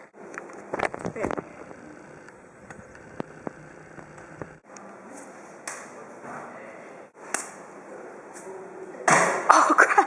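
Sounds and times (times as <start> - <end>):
low background noise: 3.2 - 10.0.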